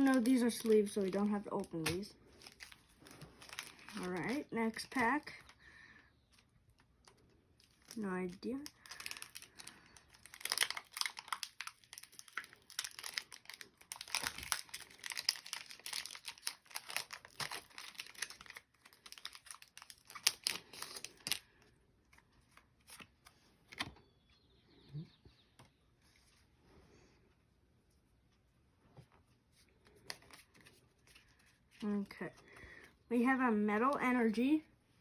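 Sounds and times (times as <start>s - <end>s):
foil wrapper crinkling and tearing: 0.0s - 5.6s, 6.3s - 23.9s.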